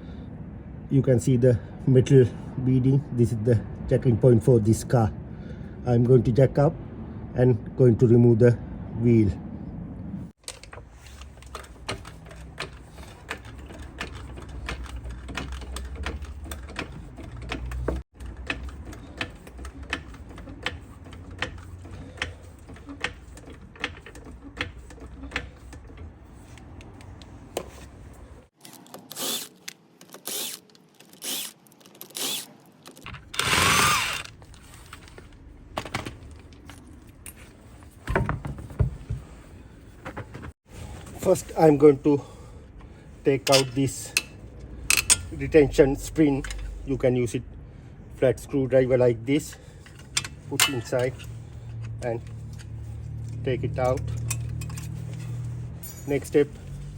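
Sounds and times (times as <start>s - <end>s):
regular mechanical clicks: 10.4s - 27.3s.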